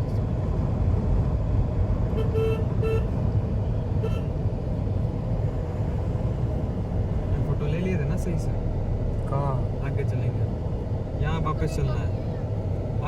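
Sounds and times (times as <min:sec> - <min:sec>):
low rumble of road traffic: 0:00.0 - 0:13.0
vehicle horn toots: 0:02.2 - 0:03.2, 0:04.0 - 0:04.3.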